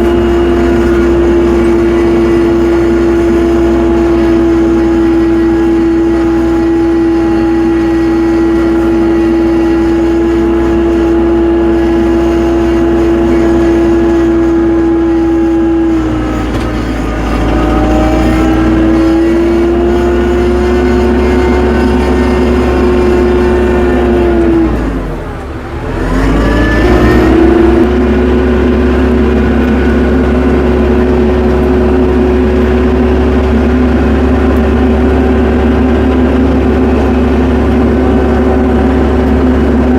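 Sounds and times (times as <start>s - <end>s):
tractor engine at high revs: 0.0s - 39.9s.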